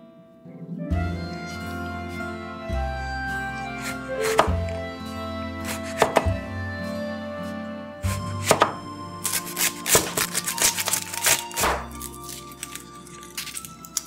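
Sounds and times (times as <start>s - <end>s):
background music: 0.0s - 14.0s
crunching of fried food: 9.2s - 14.0s.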